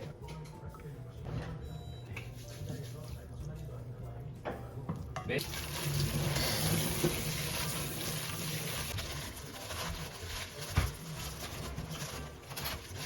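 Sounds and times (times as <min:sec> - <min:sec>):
water running: 0:05.3 - 0:13.0.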